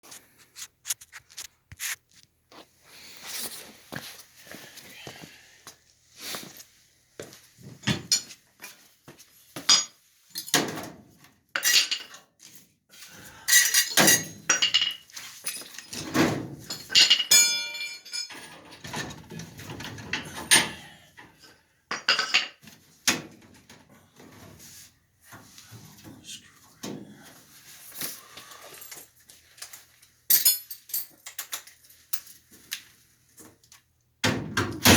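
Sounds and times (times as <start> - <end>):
metallic clanks and clinks: 13.5 - 20.9, 28.7 - 32.4.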